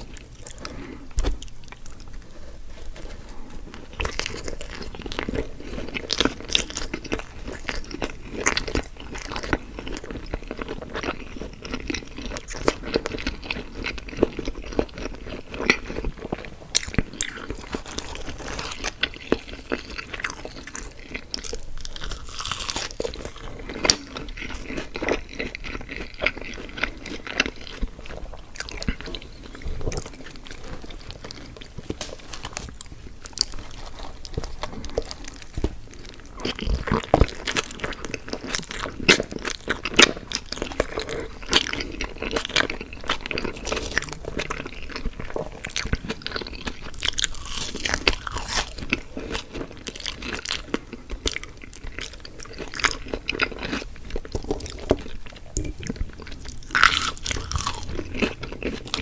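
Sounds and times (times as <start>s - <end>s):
person chewing crunchy food: 0.0s - 59.0s
wet mouth sounds: 40.7s - 49.0s.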